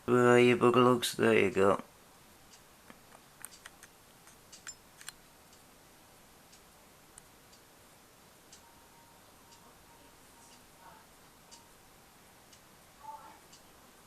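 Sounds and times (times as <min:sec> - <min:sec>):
faint steady tone: 0:03.9 - 0:14.0.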